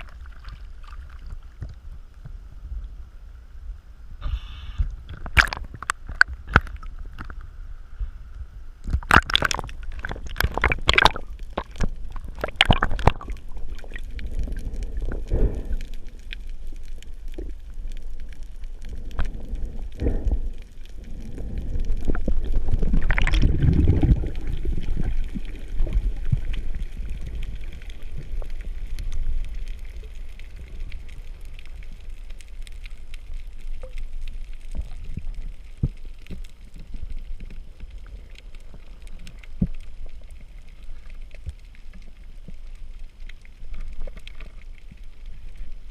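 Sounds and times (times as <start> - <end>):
underwater rumble of moving water: 0.0 - 45.9
water gurgling surge: 5.0 - 7.3, 9.0 - 16.1, 19.0 - 28.8.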